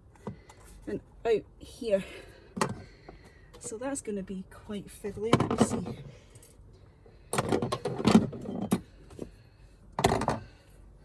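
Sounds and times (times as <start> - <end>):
parts rattling and clicking: 7.3 - 10.6.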